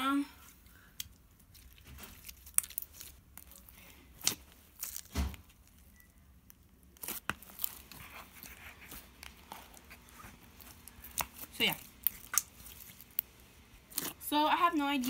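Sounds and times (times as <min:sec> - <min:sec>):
slime crackling and tearing: 0:00.8 - 0:15.0.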